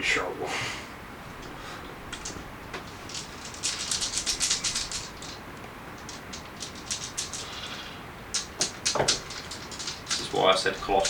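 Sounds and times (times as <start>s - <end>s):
dice rattling: 2.1s - 5.4s, 6.0s - 7.7s, 8.3s - 11.0s.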